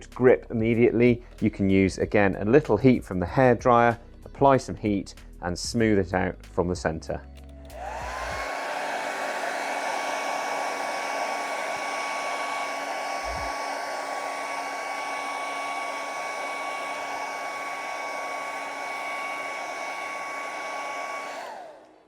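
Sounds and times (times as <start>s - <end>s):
hairdryer running: 7.7s - 22.0s.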